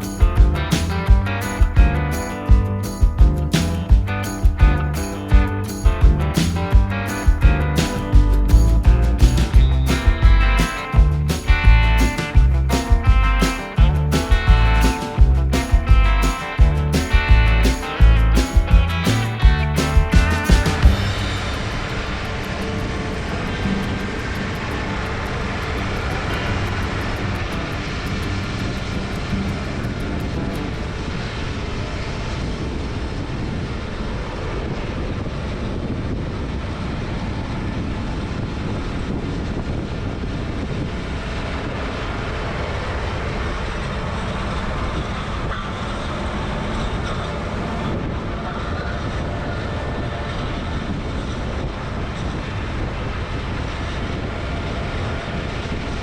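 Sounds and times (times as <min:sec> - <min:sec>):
harvest equipment rumbling: 0:00.0 - 0:31.1
diesel engine drone: 0:00.0 - 0:56.0.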